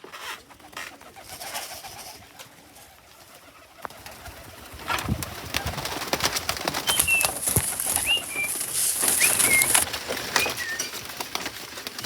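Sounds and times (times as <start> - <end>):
pigeons flapping wings: 0.2 - 12.0
clicks and rustles: 6.6 - 10.8
short high squeaks: 6.9 - 10.9.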